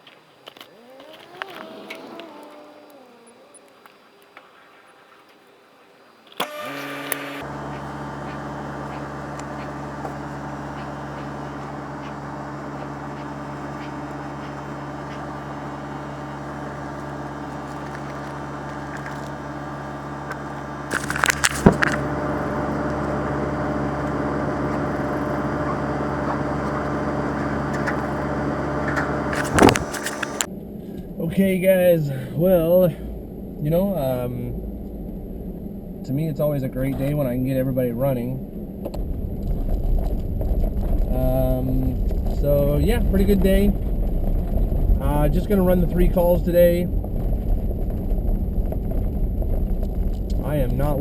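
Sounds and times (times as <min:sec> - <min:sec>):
machine motor humming: 0:01.0 - 0:04.1, 0:06.3 - 0:31.6.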